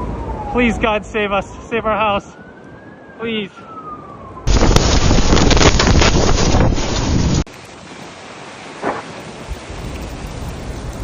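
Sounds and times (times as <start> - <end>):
wind buffeting microphone: 3.8 - 7.5
steady rushing noise: 4.5 - 7.5.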